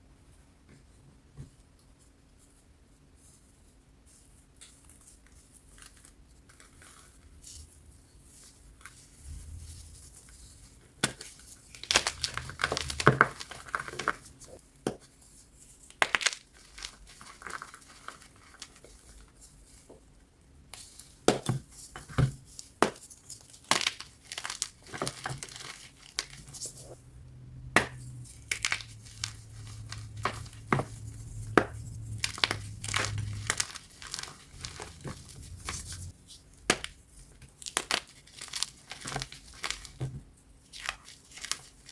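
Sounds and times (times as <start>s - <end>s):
chalk block crunching: 27.8s - 40.1s.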